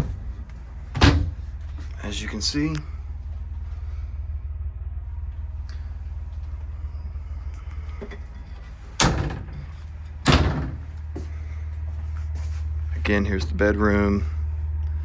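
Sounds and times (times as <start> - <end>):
doors banging shut: 0.0 - 1.8, 8.0 - 11.3
steady low hum: 0.0 - 15.0.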